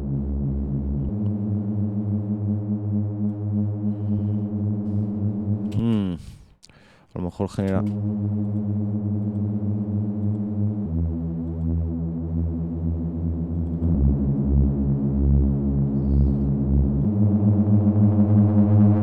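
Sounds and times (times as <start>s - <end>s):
synth bass sustained notes: 0.0s - 6.2s, 7.7s - 19.0s.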